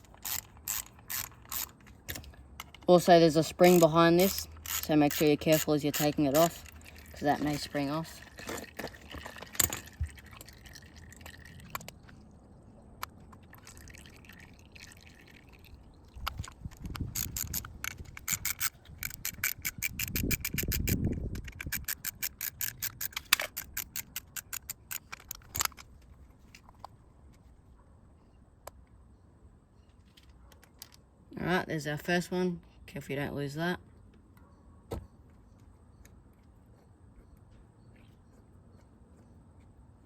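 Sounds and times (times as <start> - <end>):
socket ratchet clicking: 0.0 - 10.5, 16.2 - 25.9.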